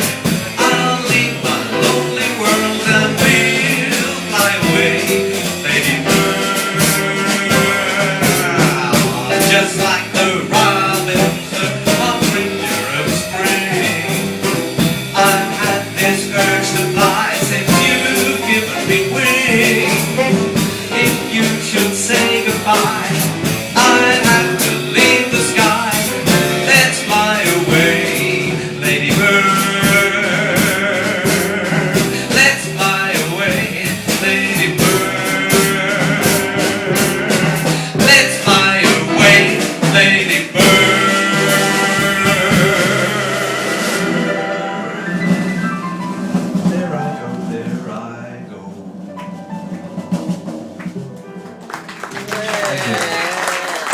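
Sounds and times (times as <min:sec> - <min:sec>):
bass: 0:00.0 - 0:53.9
drums and cymbals: 0:00.0 - 0:53.9
piano: 0:00.0 - 0:53.9
lead melody line: 0:32.3 - 0:51.7.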